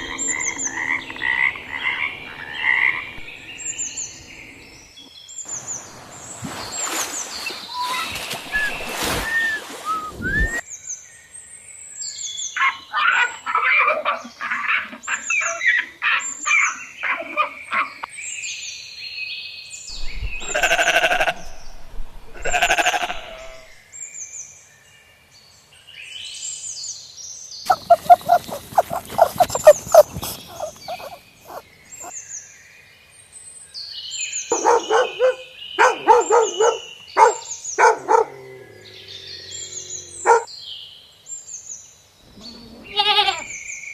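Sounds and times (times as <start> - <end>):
small birds chirping: 0.0 - 11.0, 27.5 - 32.9, 33.8 - 43.9
livestock bleating: 20.4 - 21.6, 22.4 - 23.7, 42.4 - 43.6.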